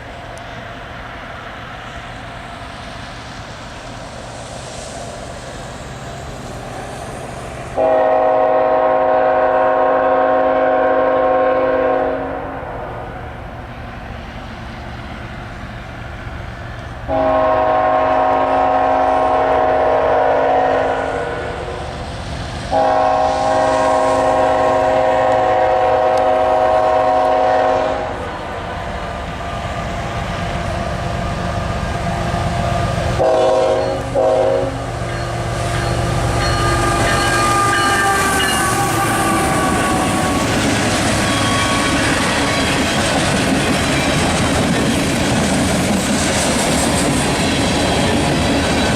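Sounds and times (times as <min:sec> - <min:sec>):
train wheels on rails: 0:00.0 - 0:48.9
locomotive air horn: 0:07.8 - 0:12.8, 0:17.1 - 0:21.8, 0:22.7 - 0:28.3, 0:33.1 - 0:42.8
locomotive engine rumble: 0:12.9 - 0:48.9.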